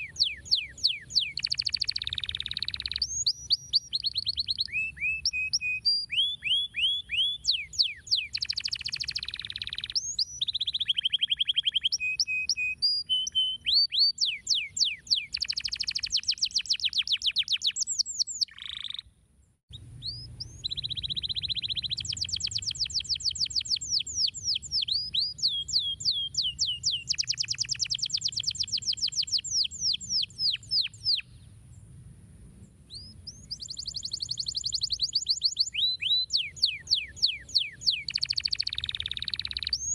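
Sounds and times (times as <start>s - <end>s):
canary singing: 0.0s - 19.1s, 19.7s - 31.3s, 32.9s - 39.9s.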